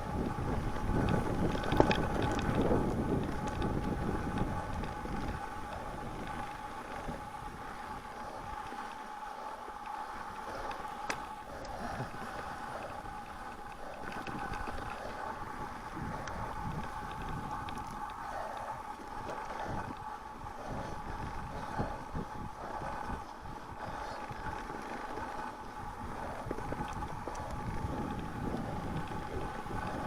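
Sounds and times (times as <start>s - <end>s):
bike clicks and rattles: 0.0s - 30.0s
wind buffeting microphone: 0.0s - 30.0s.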